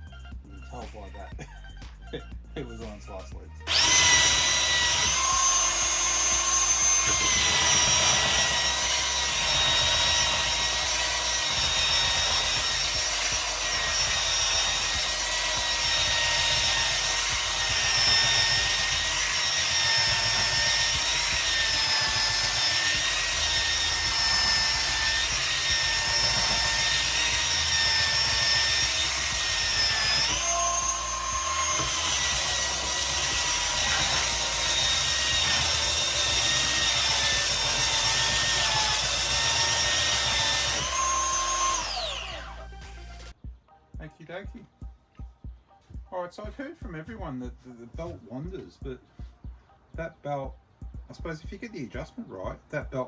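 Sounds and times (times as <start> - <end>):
belt sander on wood: 3.7 - 43.4.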